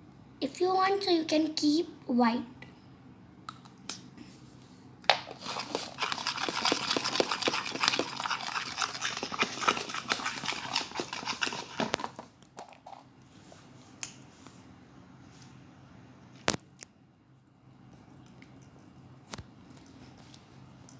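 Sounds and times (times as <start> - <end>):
fork stirring slime in a bowl: 5.4 - 12.2.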